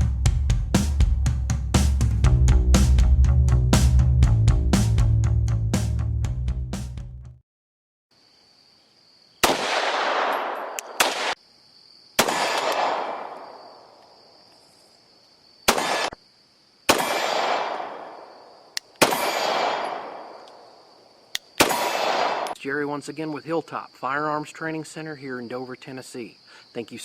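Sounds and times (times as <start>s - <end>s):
high insect buzz: 8.1s - 9.4s, 13.2s - 17.1s
gunshots with echoing tail: 9.4s - 11.4s, 12.2s - 13.9s, 15.7s - 16.2s, 16.9s - 20.5s, 21.6s - 22.6s.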